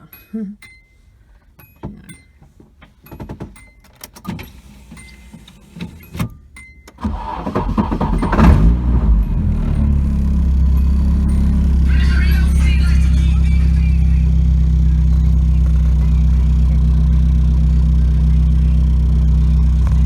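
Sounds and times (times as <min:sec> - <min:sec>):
keys jingling in ignition: 0:01.6 - 0:07.3
car engine cranking and idling: 0:06.9 - 0:20.0.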